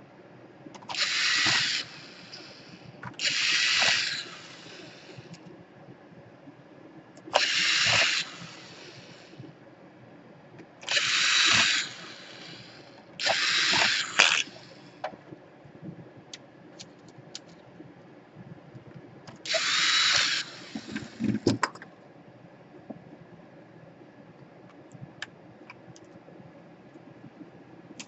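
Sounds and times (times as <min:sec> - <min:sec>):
electric screwdriver whirring: 0:00.9 - 0:02.6, 0:03.2 - 0:05.3, 0:07.3 - 0:09.4, 0:10.8 - 0:14.7, 0:19.5 - 0:21.4.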